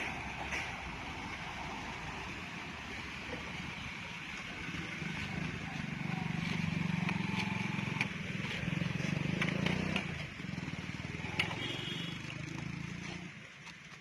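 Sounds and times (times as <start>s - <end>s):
vehicle engine running close: 0.0s - 14.0s.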